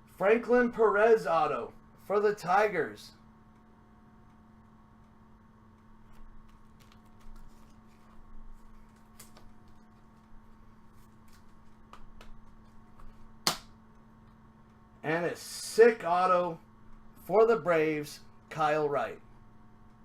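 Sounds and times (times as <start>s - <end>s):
electrical hum: 0.0s - 20.0s
trading cards being flipped: 6.0s - 13.7s
card snap: 13.4s - 13.8s.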